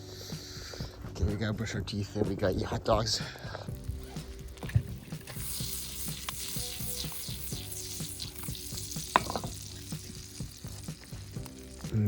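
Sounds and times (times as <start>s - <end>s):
soft music with steady beat: 0.0s - 12.0s
hot dogs sizzling over fire: 3.0s - 12.0s.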